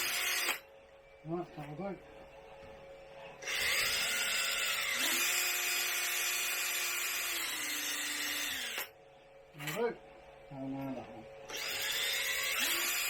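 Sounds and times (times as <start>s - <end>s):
power drill cutting plastic: 0.0s - 0.6s, 3.4s - 8.9s, 11.5s - 13.0s.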